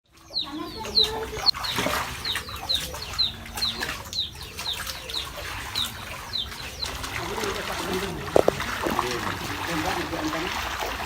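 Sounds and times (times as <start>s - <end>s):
birds chirping: 0.1s - 10.5s.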